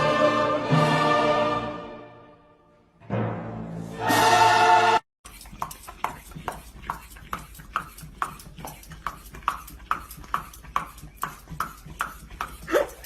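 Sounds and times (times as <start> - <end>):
loud orchestral music: 0.0 - 5.0
dog panting: 5.3 - 13.0.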